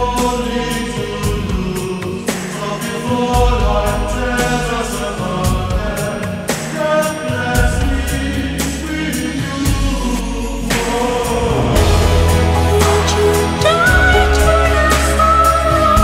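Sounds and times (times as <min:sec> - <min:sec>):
low bass: 0:00.0 - 0:02.0, 0:03.2 - 0:06.1, 0:07.6 - 0:16.0
choir singing held notes: 0:00.0 - 0:16.0.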